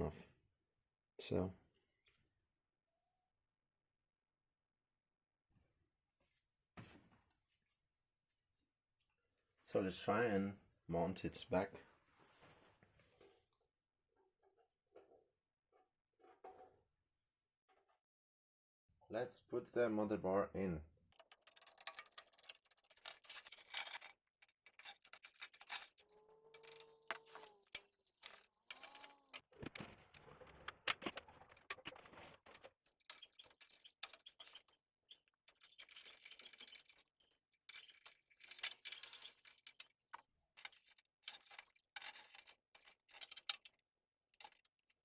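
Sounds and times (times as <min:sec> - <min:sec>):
screws clicking and rattling: 0:21.1 - 0:43.8, 0:44.4 - 0:45.0.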